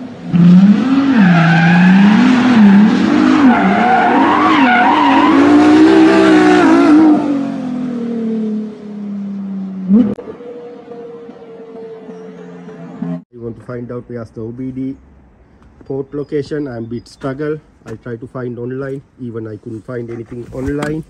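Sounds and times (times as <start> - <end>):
misfiring petrol engine revving: 0.0 - 11.4.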